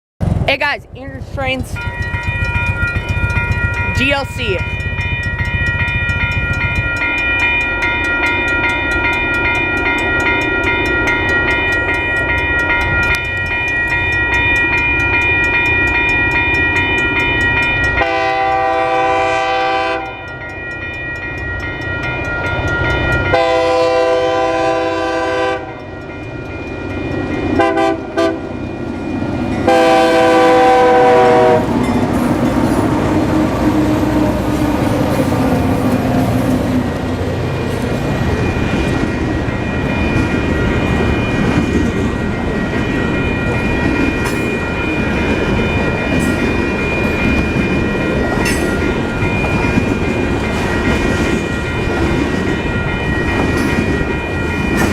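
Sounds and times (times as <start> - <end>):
rumble of passing train: 0.2 - 54.9
bell ringing rapidly: 0.6 - 18.1, 20.0 - 23.4, 38.1 - 54.9
locomotive air horn: 18.0 - 20.2, 23.3 - 25.8, 27.6 - 28.5, 29.7 - 31.8.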